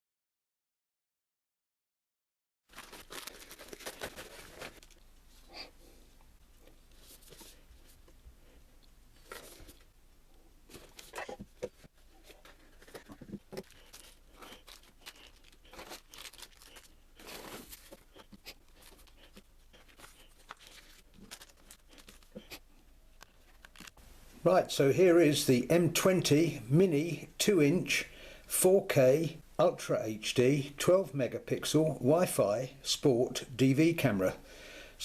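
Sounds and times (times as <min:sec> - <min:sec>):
packaging rustling and crinkling: 0:02.7 - 0:05.1, 0:10.7 - 0:22.6, 0:23.2 - 0:24.0.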